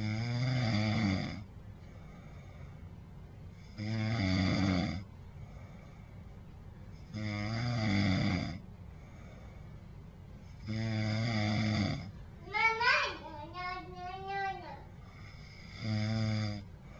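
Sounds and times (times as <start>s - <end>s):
person snoring: 0.0s - 1.5s, 3.6s - 5.0s, 7.1s - 8.6s, 10.6s - 12.1s, 15.1s - 16.6s
quiet breathing: 1.3s - 4.1s, 4.9s - 12.3s, 14.9s - 16.9s.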